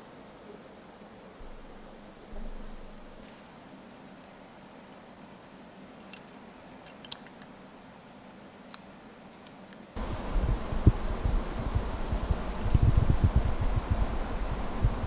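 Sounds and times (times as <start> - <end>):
fast even ticking: 0.0 - 8.1, 10.0 - 15.0
faint small clicks and taps: 4.1 - 7.6, 8.6 - 15.0.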